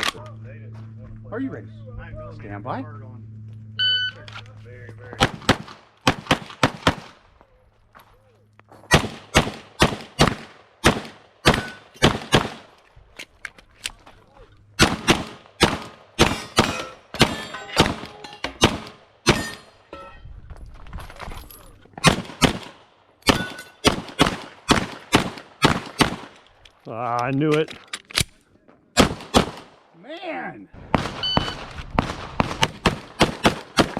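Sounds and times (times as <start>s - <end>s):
pistol shots: 5.2s - 7.2s, 8.9s - 12.7s, 14.8s - 19.7s, 22.0s - 26.4s, 29.0s - 29.9s, 30.9s - 33.9s.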